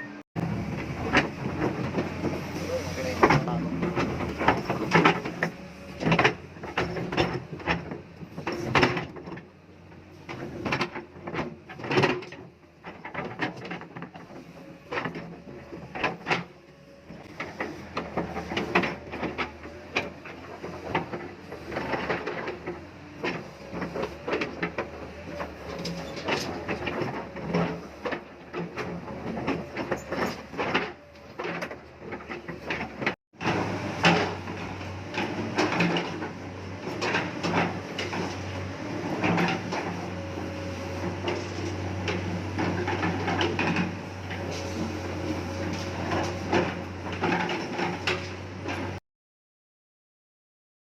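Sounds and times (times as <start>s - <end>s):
backhoe engine drone: 0.0s - 49.0s.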